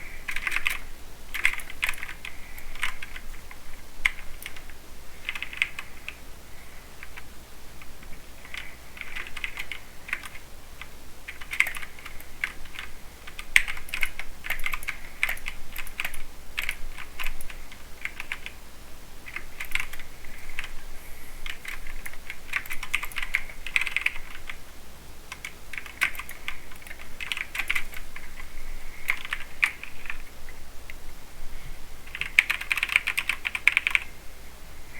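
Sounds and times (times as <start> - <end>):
mechanical keyboard typing: 0.2 - 6.2, 7.9 - 18.6, 19.2 - 20.8, 21.4 - 24.6, 25.3 - 28.5, 29.1 - 30.3, 32.1 - 34.1.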